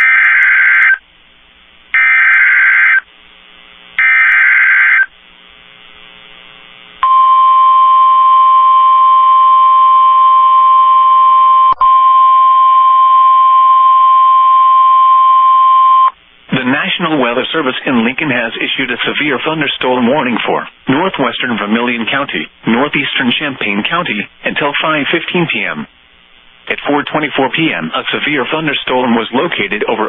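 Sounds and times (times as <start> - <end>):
steady warning alarm tone: 2.0 - 3.0, 4.0 - 5.1.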